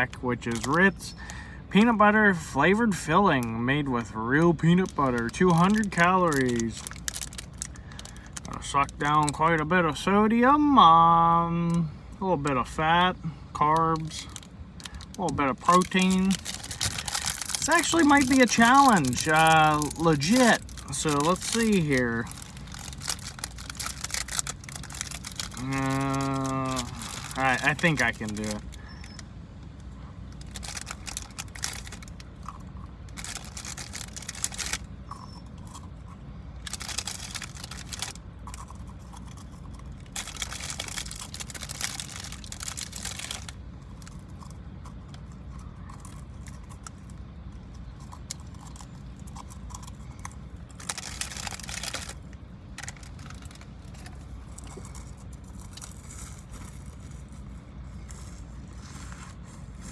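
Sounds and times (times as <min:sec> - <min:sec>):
crackers crunching: 0:00.0 - 0:09.8, 0:13.6 - 0:59.9
steady low rumble: 0:00.0 - 0:59.9
plastic wrapper crinkling and tearing: 0:00.4 - 0:00.8, 0:04.6 - 0:09.4, 0:14.0 - 0:29.2, 0:30.3 - 0:35.8, 0:36.6 - 0:45.3, 0:48.1 - 0:59.9.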